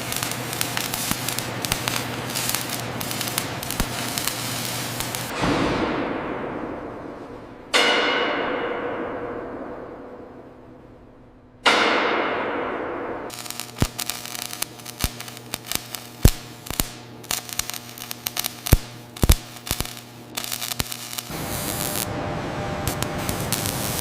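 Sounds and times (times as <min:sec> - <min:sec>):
sharp cracks and pops: 0:00.0 - 0:05.3, 0:13.3 - 0:22.0
low hum: 0:00.0 - 0:24.0
metal clang ringing: 0:05.3 - 0:10.9.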